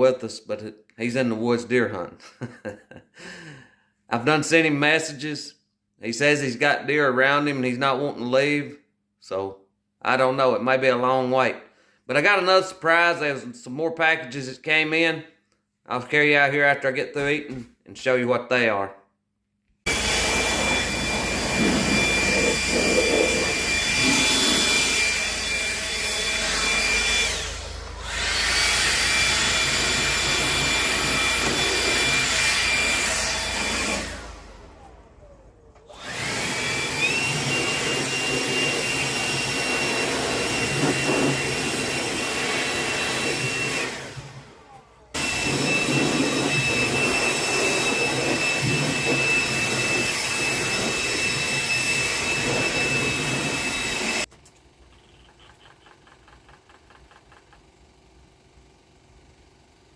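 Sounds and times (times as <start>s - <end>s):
small motor whining: 19.9s - 54.3s.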